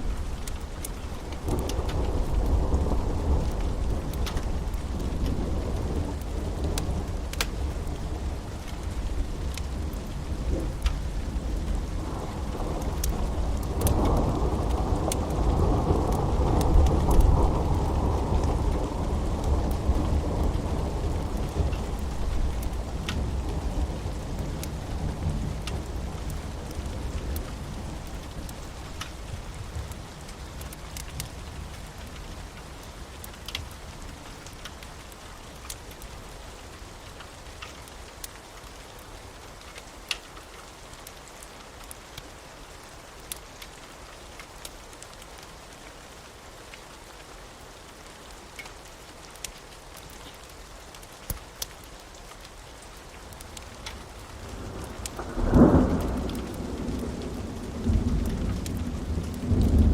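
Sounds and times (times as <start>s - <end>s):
steady rain: 0.0s - 59.9s
thunder rumbling: 54.1s - 59.9s.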